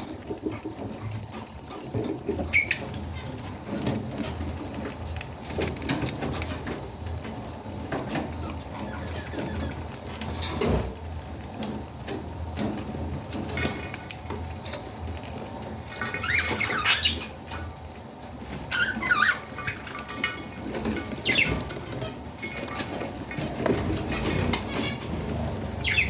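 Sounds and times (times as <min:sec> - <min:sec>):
baby budgies chirping: 0:00.0 - 0:06.8, 0:07.7 - 0:10.8, 0:15.1 - 0:26.0.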